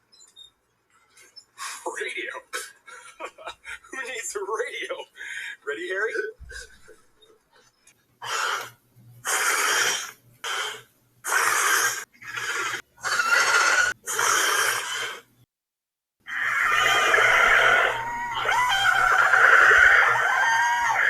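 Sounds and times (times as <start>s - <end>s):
dinosaur screeching: 8.2s - 15.3s, 16.2s - 21.0s.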